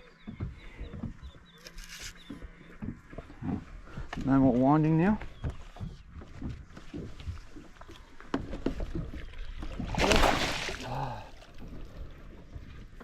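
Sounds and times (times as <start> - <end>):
fish splashing at water surface: 9.8 - 11.3.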